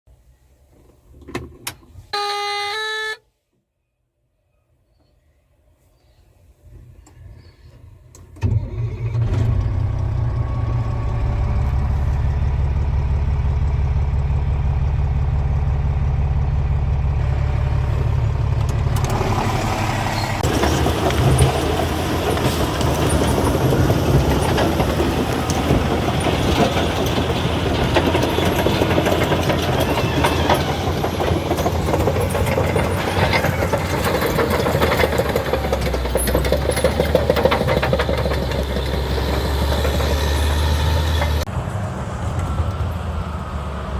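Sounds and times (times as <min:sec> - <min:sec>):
bulldozer diesel engine running: 0:09.4 - 0:43.9
tracks clattering and rattling: 0:18.5 - 0:41.5.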